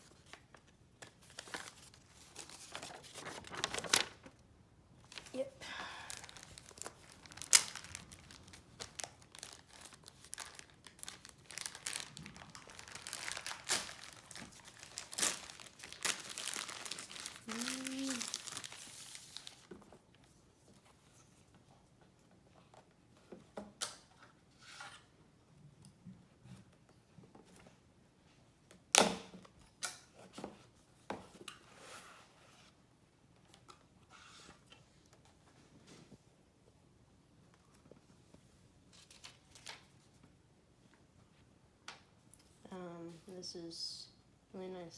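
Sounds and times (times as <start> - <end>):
packaging crinkling and tearing: 1.0 - 4.4, 5.0 - 19.7.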